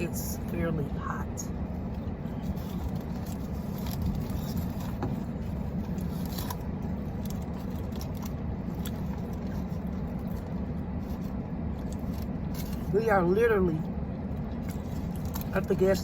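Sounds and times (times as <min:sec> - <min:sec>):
car engine idling hum: 0:00.0 - 0:16.0
light clicks and crinkles: 0:01.8 - 0:13.0.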